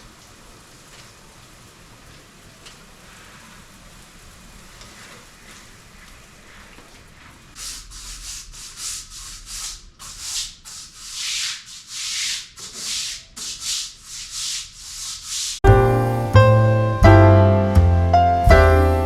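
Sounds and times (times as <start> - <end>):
scratchy rubbing strokes: 7.5 - 15.6.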